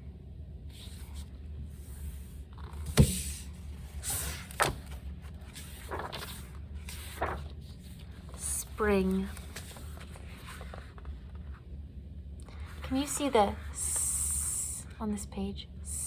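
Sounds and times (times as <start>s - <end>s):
low room hum: 0.0s - 16.0s
pages turning: 2.5s - 11.6s
book knocking: 2.8s - 3.4s.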